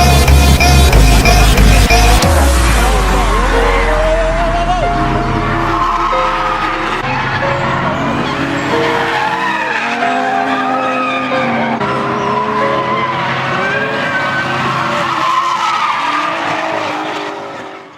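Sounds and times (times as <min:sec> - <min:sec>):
engine drone: 0:00.0 - 0:15.9
tyres squealing: 0:05.0 - 0:17.6.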